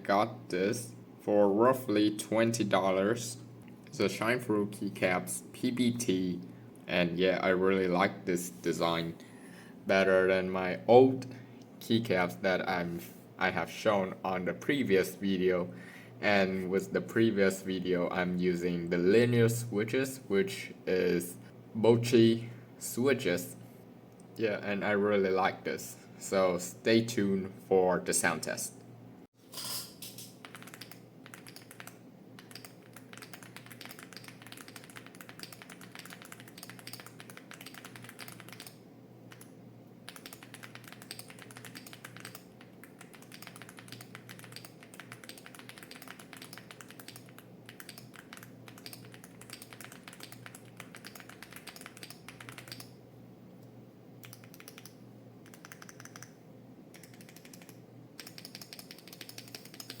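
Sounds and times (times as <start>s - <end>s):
mechanical keyboard typing: 30.3s - 39.5s, 40.1s - 52.9s, 54.2s - 60.0s.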